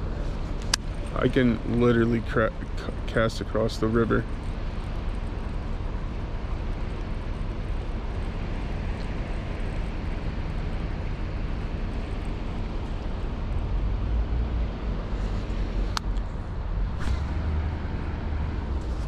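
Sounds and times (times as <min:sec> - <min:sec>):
deep rumble: 0:00.0 - 0:19.0
rushing outdoor noise: 0:00.0 - 0:19.0.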